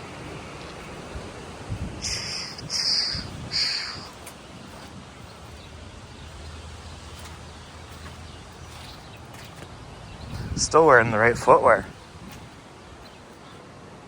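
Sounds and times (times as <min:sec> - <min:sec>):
bird giving harsh calls: 0:02.0 - 0:10.6.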